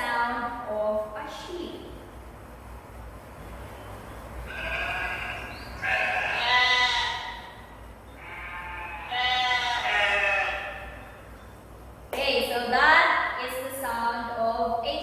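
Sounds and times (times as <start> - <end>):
sheep bleating: 4.5 - 7.6, 8.2 - 11.1.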